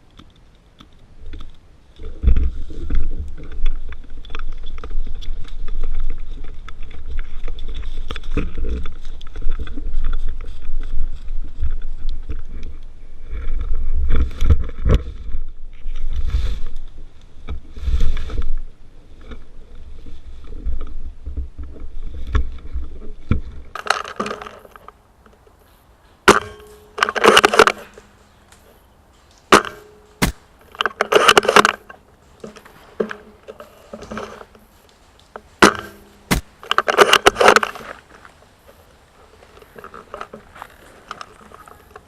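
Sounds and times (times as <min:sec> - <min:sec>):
rustling movement: 0:00.0 - 0:42.0
airsoft rifle snapping shots: 0:29.6 - 0:30.5.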